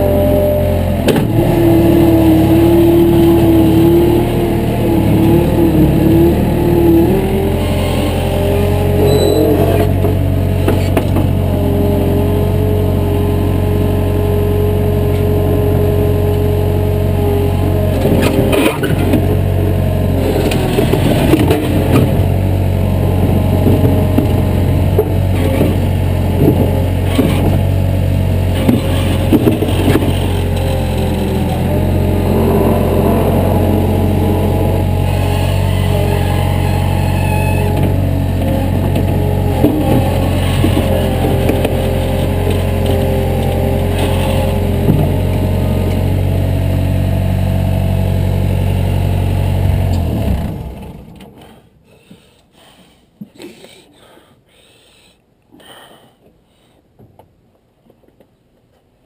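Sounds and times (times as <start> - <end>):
heavy machine engine running: 0.0 - 51.4.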